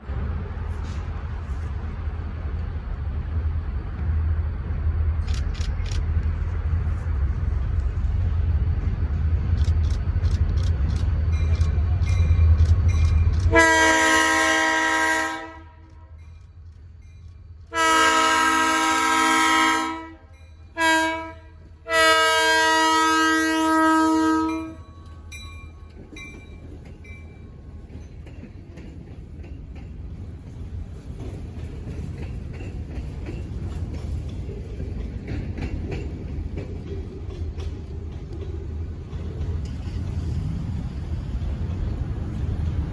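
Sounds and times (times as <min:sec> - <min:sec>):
low train rumble: 0:00.0 - 0:42.9
locomotive air horn blasts: 0:13.5 - 0:16.1, 0:17.7 - 0:24.8.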